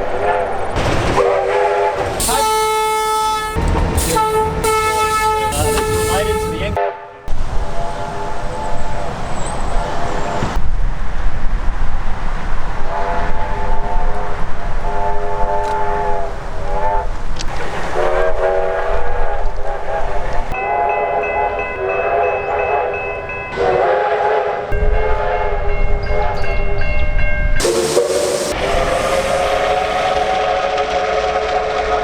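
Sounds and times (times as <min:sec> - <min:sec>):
bright hissy horn: 0:01.2 - 0:06.8, 0:27.6 - 0:32.0
train horn blasts: 0:01.2 - 0:07.4, 0:12.8 - 0:14.2, 0:14.8 - 0:17.1, 0:17.9 - 0:26.4, 0:27.6 - 0:32.0.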